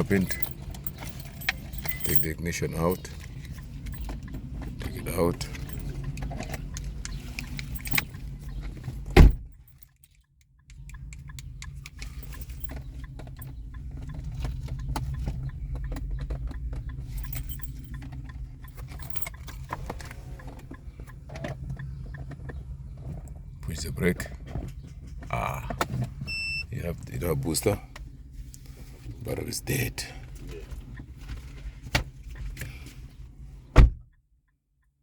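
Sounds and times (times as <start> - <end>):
car key jingling and clicking: 0.0 - 22.6
steady low rumble: 0.0 - 32.5.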